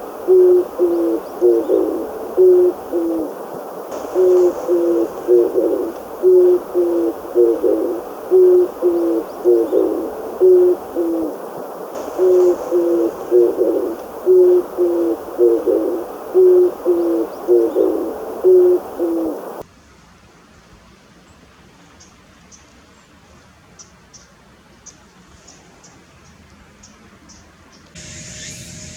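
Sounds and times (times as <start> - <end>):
dove cooing: 0.0 - 19.6.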